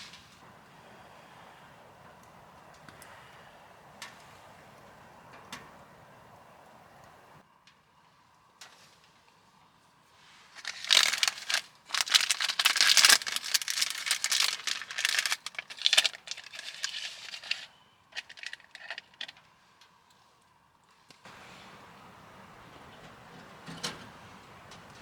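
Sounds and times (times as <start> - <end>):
crinkly material rustling: 10.4 - 19.4.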